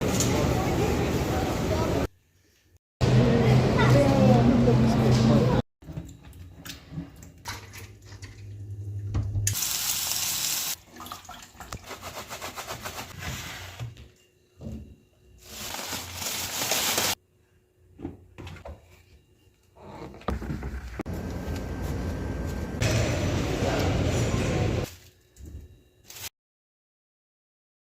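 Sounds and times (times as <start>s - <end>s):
water running from a tap: 9.5s - 11.8s.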